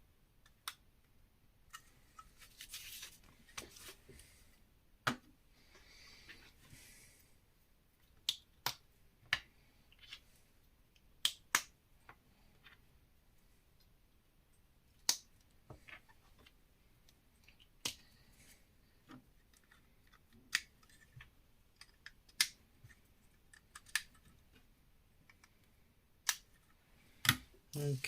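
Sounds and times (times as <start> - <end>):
soft rustling: 1.8 - 4.6.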